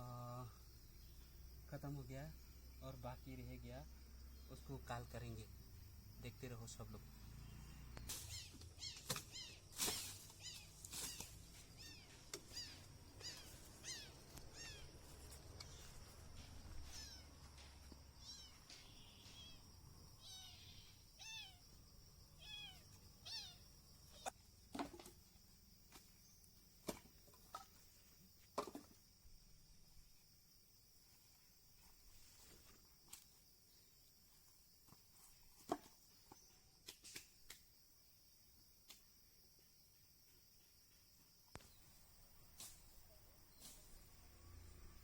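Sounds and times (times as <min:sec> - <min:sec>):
animal mewing cries: 0:11.8 - 0:14.9, 0:20.2 - 0:21.6, 0:22.4 - 0:24.3.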